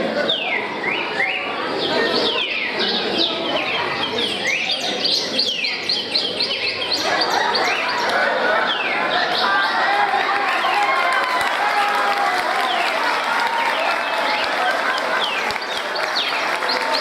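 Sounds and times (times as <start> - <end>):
birds whistling calls: 0.2 - 9.5.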